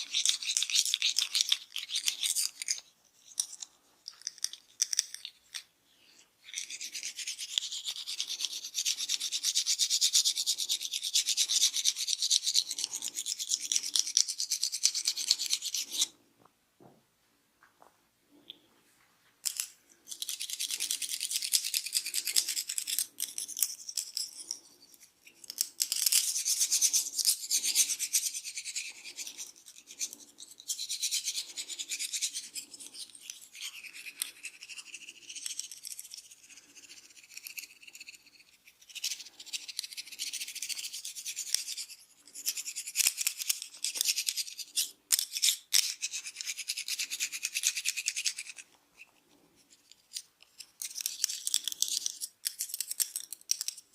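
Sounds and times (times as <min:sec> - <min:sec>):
fingers scratching through hair: 0:06.4 - 0:16.1.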